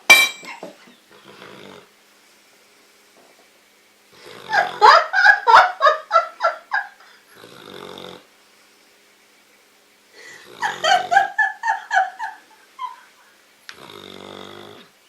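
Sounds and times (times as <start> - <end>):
dog snoring: 1.1 - 1.9, 4.1 - 4.8, 7.3 - 8.3, 13.7 - 14.9.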